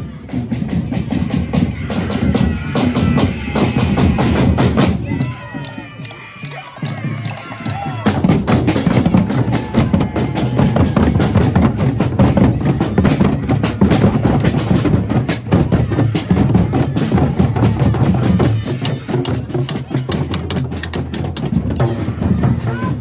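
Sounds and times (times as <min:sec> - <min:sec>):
drum band playing: 0:00.0 - 0:23.0.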